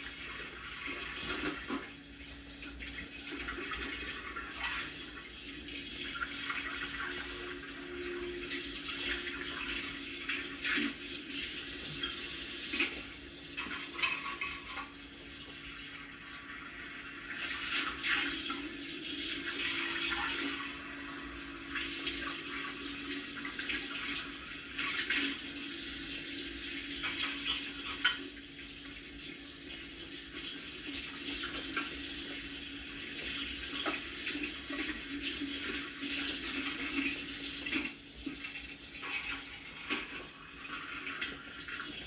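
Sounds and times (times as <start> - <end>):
tap water running into sink: 0.0 - 42.0.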